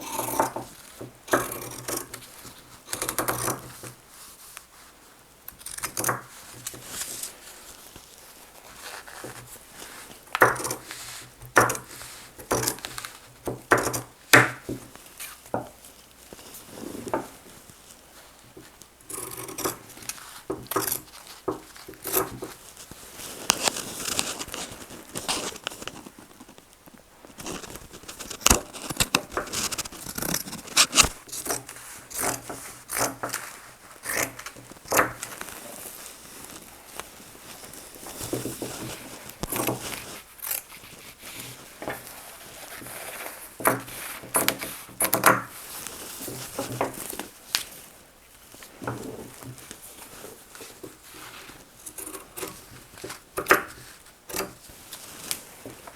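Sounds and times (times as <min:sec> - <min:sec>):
fabric rustling on table: 0:06.2 - 0:55.9
shears snipping fabric: 0:19.1 - 0:26.1, 0:27.4 - 0:35.9.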